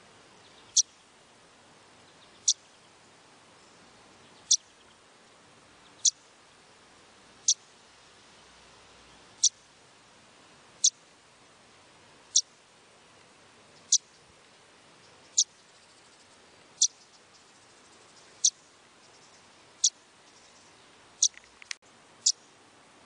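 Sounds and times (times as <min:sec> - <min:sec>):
bird chirping: 0:00.4 - 0:01.1, 0:02.0 - 0:03.0, 0:03.6 - 0:05.0, 0:05.8 - 0:06.3, 0:08.4 - 0:09.6, 0:13.7 - 0:14.3, 0:15.0 - 0:22.5.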